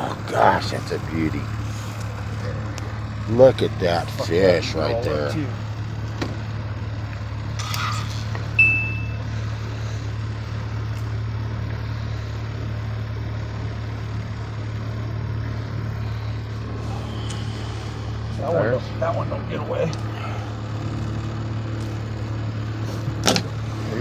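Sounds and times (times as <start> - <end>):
boat engine idling: 0.0 - 24.0
short high-pitched tone: 8.6 - 9.3.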